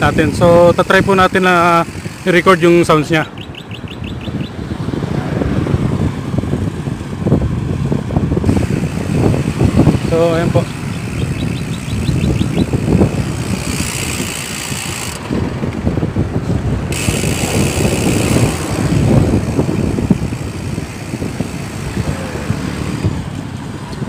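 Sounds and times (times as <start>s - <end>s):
bicycle freewheel ticking: 0.0s - 4.3s, 8.4s - 15.5s, 16.8s - 22.3s
truck engine passing: 14.8s - 24.0s.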